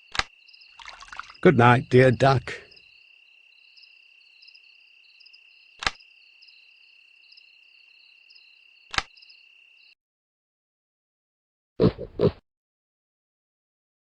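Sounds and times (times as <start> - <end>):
crickets chirping: 0.0 - 10.0
loud sharp clicks: 0.1 - 0.3, 5.8 - 6.0, 8.9 - 9.2.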